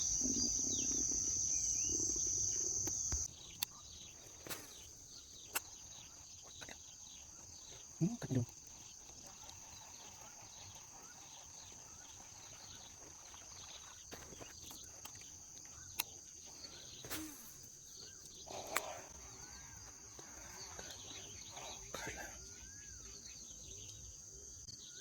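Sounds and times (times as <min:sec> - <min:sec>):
high-pitched insect drone: 0:00.0 - 0:03.3
bird chirps: 0:00.0 - 0:25.0.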